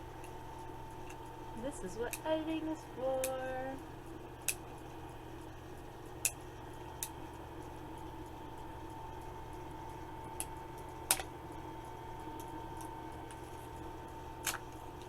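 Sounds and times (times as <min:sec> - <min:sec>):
steady background hum: 0:00.0 - 0:15.0
plastic packaging clicks and snaps: 0:14.4 - 0:14.8.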